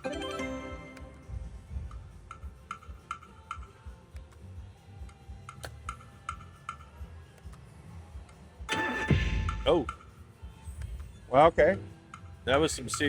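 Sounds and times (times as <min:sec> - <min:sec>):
slot machine electronic ticking: 0:00.0 - 0:01.4, 0:08.7 - 0:10.0
low casino hum: 0:00.0 - 0:02.5.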